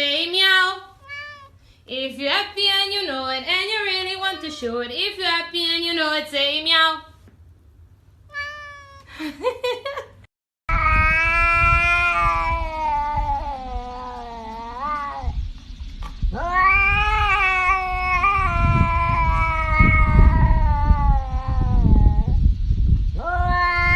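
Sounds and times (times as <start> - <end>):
cat yowling: 1.0 - 1.6, 8.3 - 9.1, 10.7 - 15.4, 16.3 - 22.4, 23.2 - 23.9.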